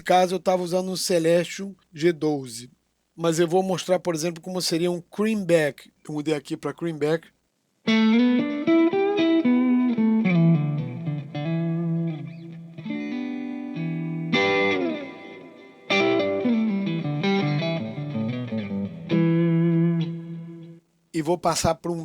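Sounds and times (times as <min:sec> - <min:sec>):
electric guitar chords and notes: 0:07.8 - 0:20.8.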